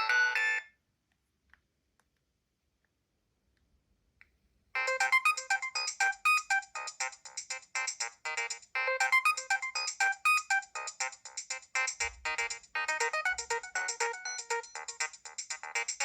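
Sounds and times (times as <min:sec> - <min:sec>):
polyphonic ringtone melody: 0:00.0 - 0:00.6, 0:04.8 - 0:16.0.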